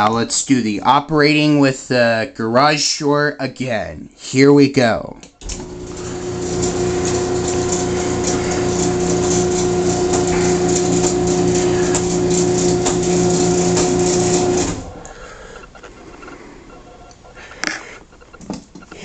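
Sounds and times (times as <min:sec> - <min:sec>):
garage door opener motor humming: 0:05.4 - 0:15.8.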